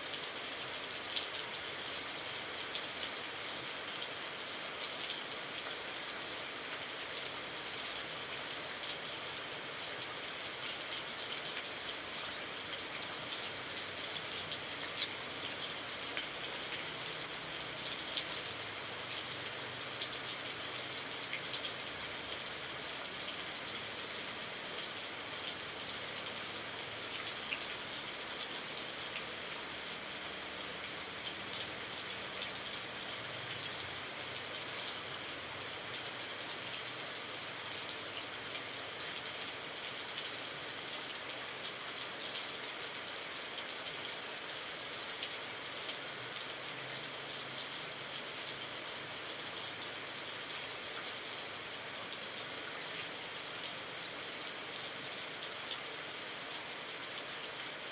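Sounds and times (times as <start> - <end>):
steady rain falling: 0.0 - 57.9.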